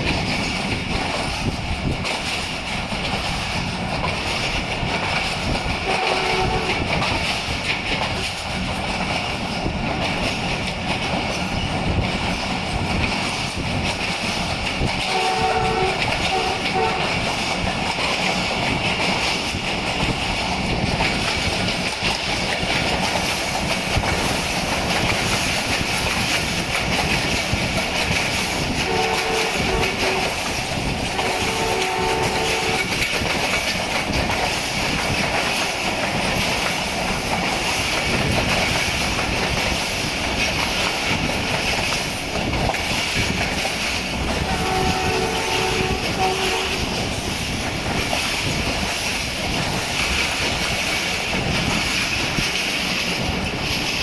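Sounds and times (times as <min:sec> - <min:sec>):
train rumble and clatter on track: 0:00.0 - 0:54.0
two-tone locomotive horn blasts: 0:05.8 - 0:07.1, 0:15.0 - 0:17.5, 0:28.6 - 0:33.2, 0:44.3 - 0:47.1.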